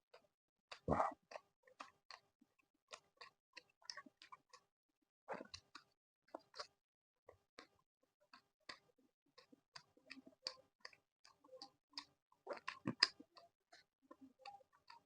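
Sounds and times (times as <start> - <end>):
wet mouth chewing: 0.7 - 2.3, 2.9 - 4.6, 5.3 - 6.7, 12.0 - 13.2.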